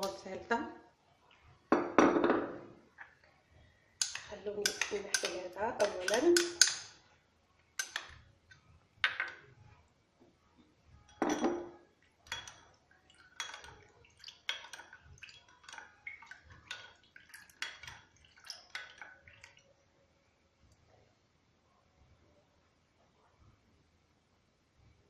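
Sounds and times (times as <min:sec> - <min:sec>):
spoon clinking against a dish: 0:04.0 - 0:07.0, 0:07.8 - 0:08.2, 0:11.1 - 0:19.6.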